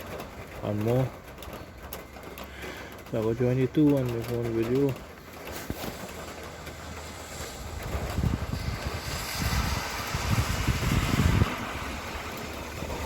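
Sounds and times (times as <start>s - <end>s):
wind buffeting microphone: 5.7s - 13.0s.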